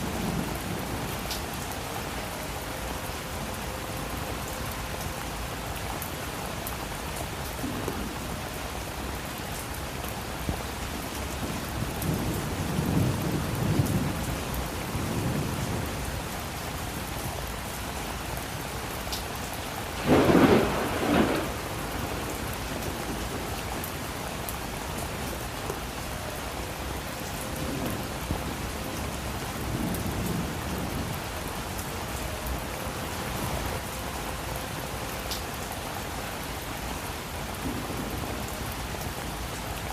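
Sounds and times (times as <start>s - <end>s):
steady rain: 0.0s - 39.9s
sharp thunderclap: 20.0s - 22.2s
distant thunder rumbling: 20.0s - 24.1s.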